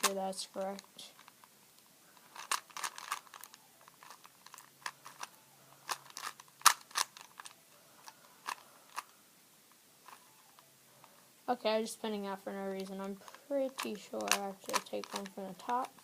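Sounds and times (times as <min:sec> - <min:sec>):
rubik's cube clicking: 0:00.8 - 0:07.6, 0:08.4 - 0:09.1, 0:12.8 - 0:16.0.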